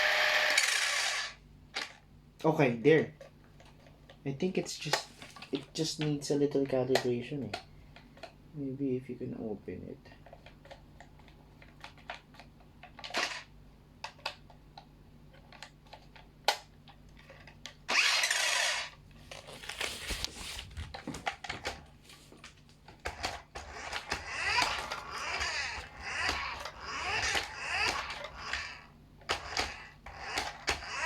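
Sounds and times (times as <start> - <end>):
small electric motor whirring: 0.0 - 1.4, 17.9 - 18.9, 23.1 - 31.0
plastic toy car clicking: 10.2 - 14.5, 22.9 - 31.0
scratchy mechanical rattling: 23.0 - 31.0.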